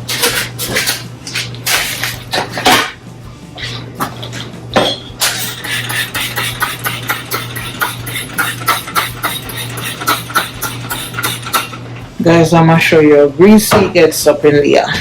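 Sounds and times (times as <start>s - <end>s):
steady low hum: 0.0s - 15.0s
hand scrubbing kitchen surface: 5.4s - 11.6s.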